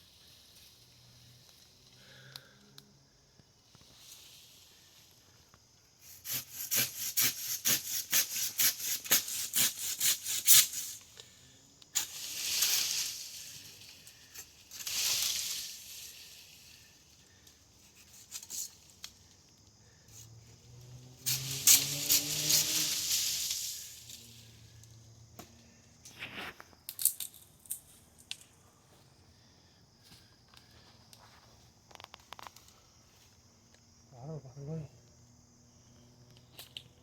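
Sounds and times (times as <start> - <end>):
hand saw cutting wood: 6.0 - 10.8.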